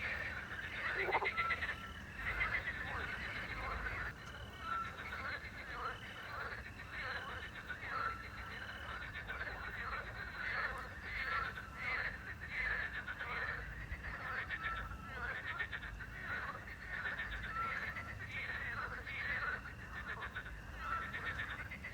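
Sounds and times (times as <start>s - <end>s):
crickets chirping: 0.0s - 12.8s
frogs croaking: 0.0s - 21.9s.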